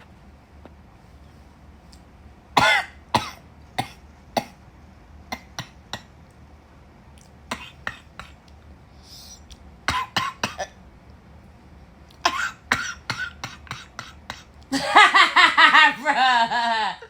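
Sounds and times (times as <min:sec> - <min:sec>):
man coughing: 0:02.6 - 0:04.6, 0:12.3 - 0:15.2
rhythmic laughter: 0:14.7 - 0:17.0.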